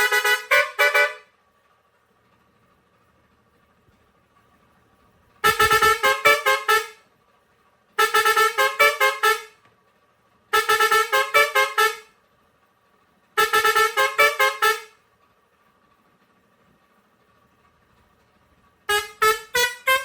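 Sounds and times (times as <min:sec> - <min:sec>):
air horn playing melody: 0:00.0 - 0:01.3, 0:05.4 - 0:07.0, 0:08.0 - 0:09.6, 0:10.5 - 0:12.1, 0:13.4 - 0:15.0, 0:18.9 - 0:20.0.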